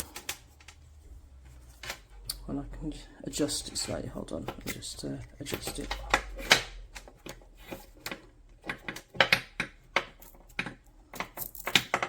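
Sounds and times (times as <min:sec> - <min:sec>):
handling clicks and knocks: 0:03.4 - 0:12.0.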